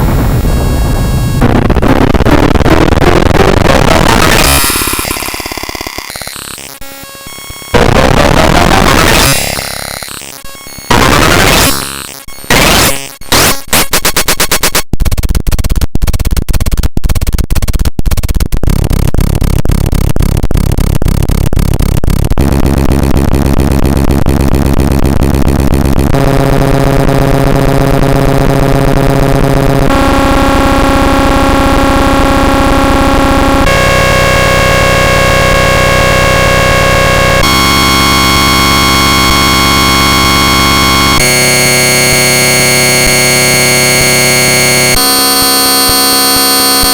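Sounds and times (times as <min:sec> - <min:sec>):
sped up electronic alarm noise: 0:00.2 - 0:13.7, 0:33.6 - 0:46.9.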